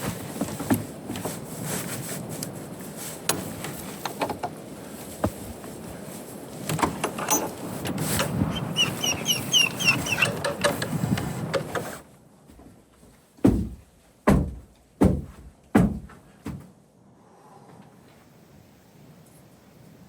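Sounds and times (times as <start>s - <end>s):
rustling and clattering: 0.0s - 16.8s
short squeaks: 7.1s - 12.0s
heavy knocks: 13.4s - 16.7s.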